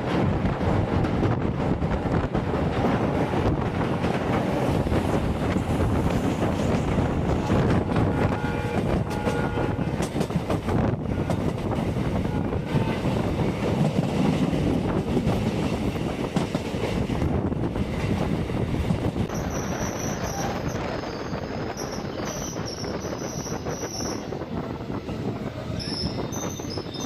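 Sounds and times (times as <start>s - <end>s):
train wheels clattering on rails: 0.0s - 27.0s.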